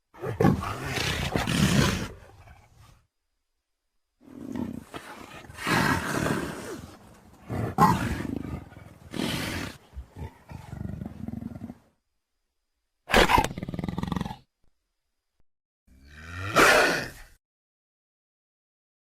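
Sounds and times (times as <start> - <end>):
dinosaur raspy calls and growls: 0.1 - 3.0, 4.2 - 11.9, 15.9 - 17.4.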